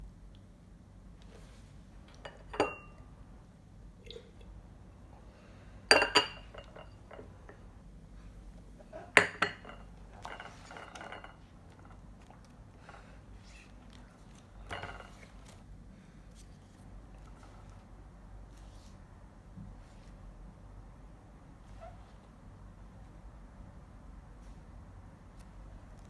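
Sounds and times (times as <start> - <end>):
soft dish clatter: 2.1 - 3.0, 5.9 - 7.7, 8.8 - 13.1, 14.4 - 15.6
dishes clinking: 2.2 - 3.0, 5.9 - 7.6, 9.0 - 12.0, 14.6 - 15.6.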